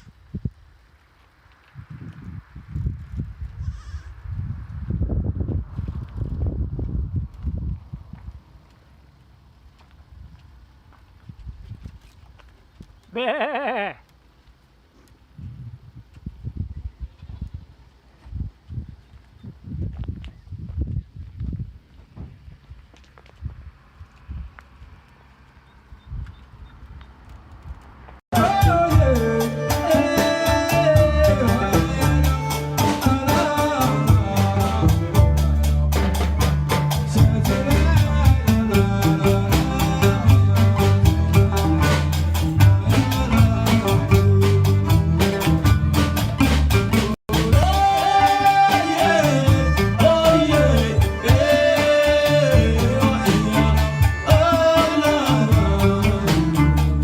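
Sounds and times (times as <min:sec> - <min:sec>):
person singing gliding melody: 0:28.4 - 0:36.0, 0:47.3 - 0:57.0
low bass line: 0:28.4 - 0:57.0.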